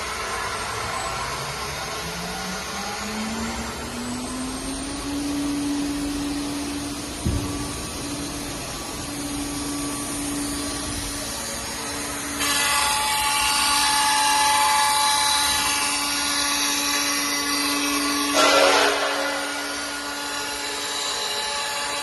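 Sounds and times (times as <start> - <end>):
router spindle whine: 0.0 - 22.0.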